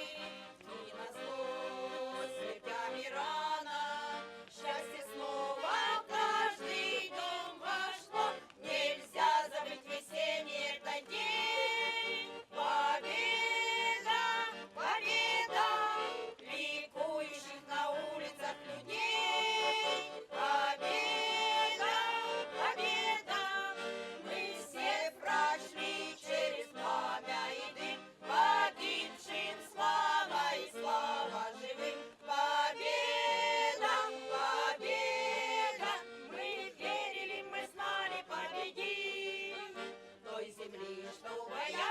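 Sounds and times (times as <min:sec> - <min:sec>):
choir singing: 0:00.0 - 0:41.9.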